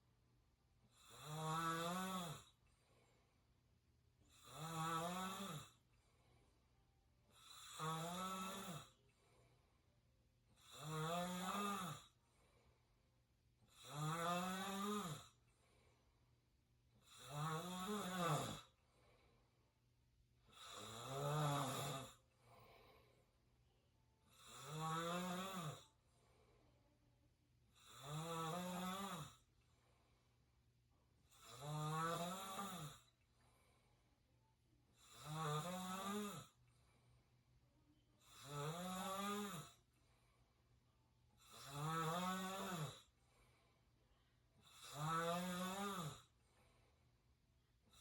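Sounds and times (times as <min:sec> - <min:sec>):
open-mouthed snoring: 0:00.9 - 0:02.6, 0:04.3 - 0:05.8, 0:07.3 - 0:09.0, 0:10.6 - 0:12.2, 0:13.7 - 0:15.4, 0:17.0 - 0:18.7, 0:20.5 - 0:22.2, 0:24.3 - 0:25.9, 0:27.7 - 0:29.4, 0:31.3 - 0:33.1, 0:35.0 - 0:36.6, 0:38.2 - 0:39.8, 0:41.4 - 0:43.1, 0:44.6 - 0:46.3.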